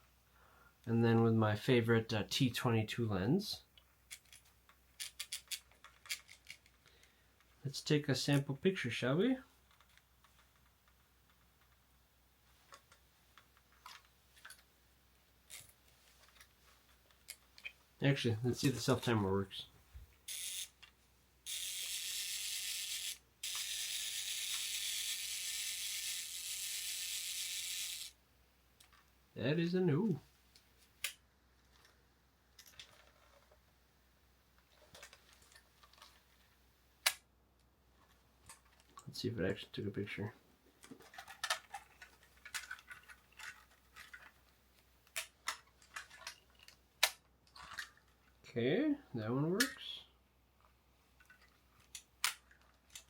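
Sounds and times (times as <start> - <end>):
camera self-timer whirring buzz: 20.3 - 20.7, 21.5 - 28.2.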